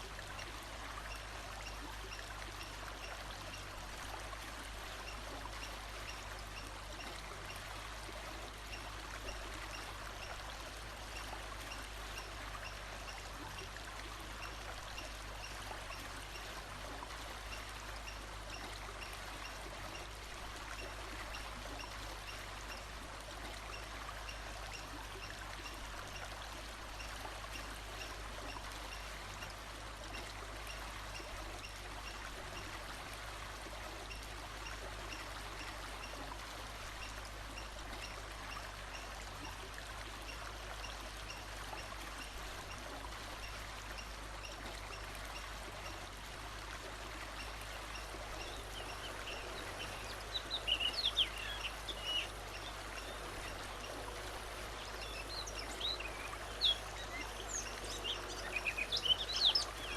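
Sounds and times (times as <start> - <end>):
running water: 0.0 - 59.9
bird chirping: 54.8 - 59.9.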